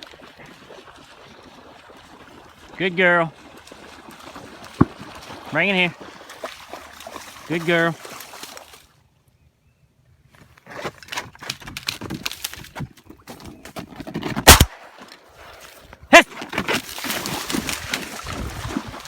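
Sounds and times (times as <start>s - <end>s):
shotgun shots: 14.4s - 15.0s.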